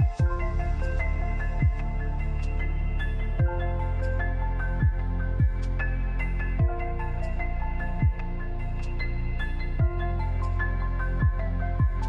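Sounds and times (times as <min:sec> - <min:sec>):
calm synth background music: 0:00.0 - 0:12.0.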